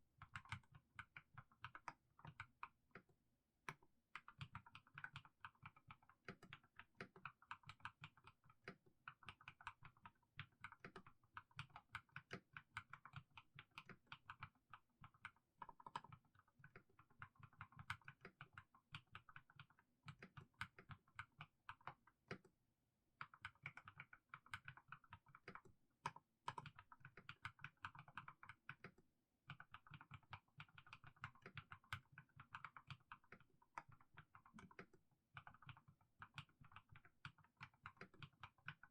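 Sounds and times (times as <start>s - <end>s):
mechanical keyboard typing: 15.1s - 22.5s, 23.2s - 38.9s.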